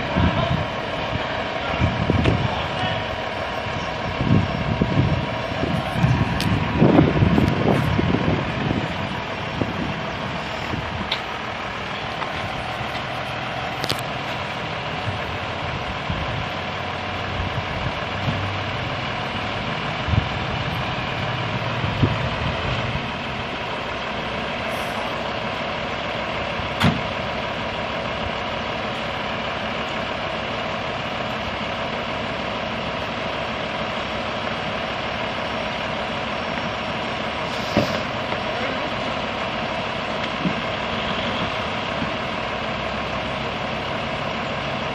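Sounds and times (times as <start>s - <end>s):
diesel engine idling: 0.0s - 44.9s
sharp engine knocks: 26.8s - 27.1s.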